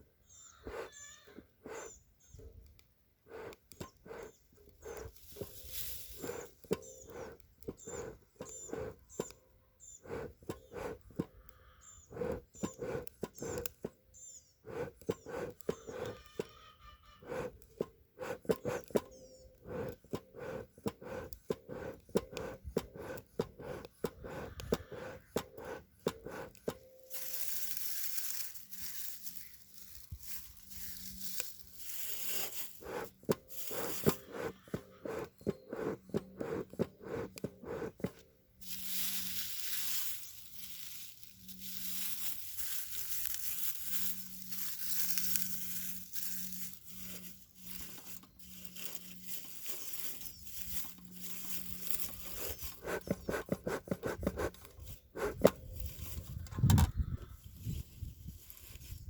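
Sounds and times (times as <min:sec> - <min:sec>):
bee smoker hissing: 0:03.3 - 0:09.0, 0:12.1 - 0:13.7, 0:14.6 - 0:16.2, 0:19.6 - 0:56.2
pine needles crackling: 0:04.1 - 0:07.9, 0:27.0 - 0:34.3, 0:38.6 - 0:53.0, 0:58.2 - 0:59.0.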